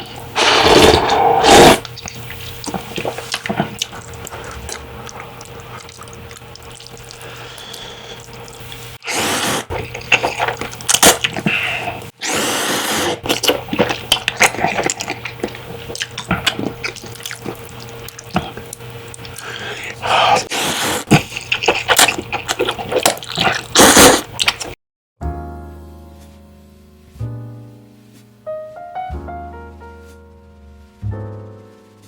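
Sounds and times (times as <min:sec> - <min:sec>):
wet chewing and mouth clicks: 0:00.0 - 0:12.2, 0:13.2 - 0:24.8
noodles being slurped: 0:00.0 - 0:24.8.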